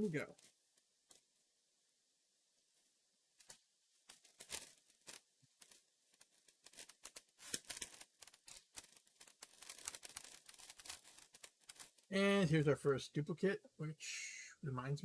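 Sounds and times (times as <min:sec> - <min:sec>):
plastic packaging tearing and crinkling: 0:03.4 - 0:12.1.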